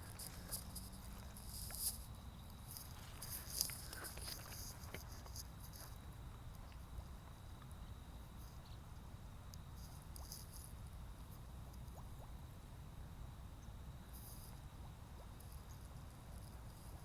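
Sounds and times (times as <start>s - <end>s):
steady high hum: 0.0s - 17.0s.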